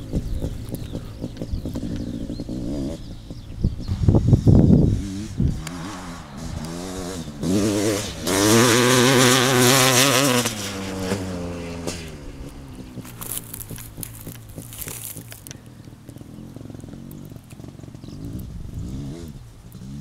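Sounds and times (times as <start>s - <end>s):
two-stroke engine revving: 0.0s - 20.0s
heavy low thumps: 3.2s - 5.6s.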